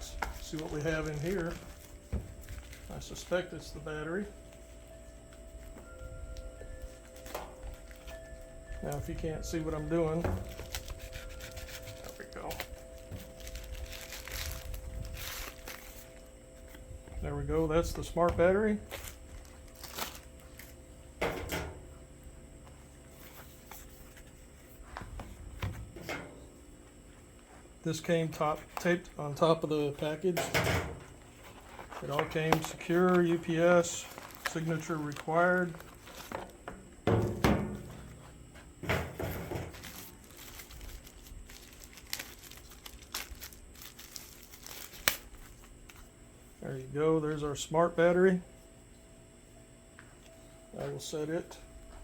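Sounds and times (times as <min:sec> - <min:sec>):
packaging scuffing and rustling: 0:00.0 - 0:03.8, 0:04.4 - 0:16.8, 0:17.9 - 0:20.8, 0:31.0 - 0:36.6, 0:37.2 - 0:46.0.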